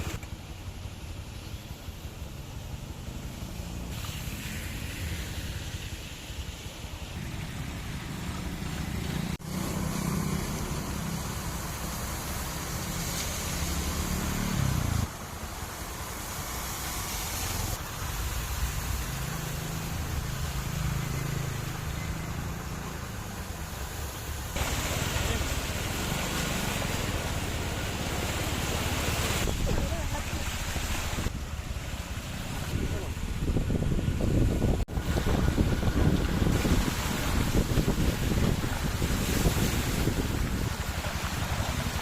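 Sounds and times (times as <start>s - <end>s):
vehicle engine and road rumble: 0.0s - 42.0s.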